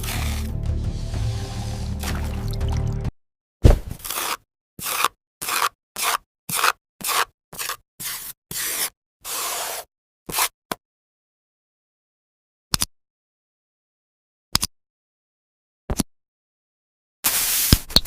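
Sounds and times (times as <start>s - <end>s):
scraping noises: 0.0s - 2.6s
background music: 0.0s - 3.1s
loud thud: 3.6s - 4.0s.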